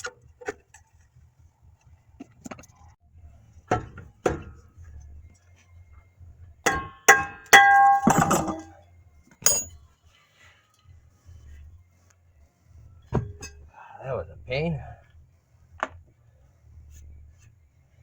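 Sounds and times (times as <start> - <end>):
metal tools clinking and clanking: 7.6 - 8.8, 9.4 - 9.8.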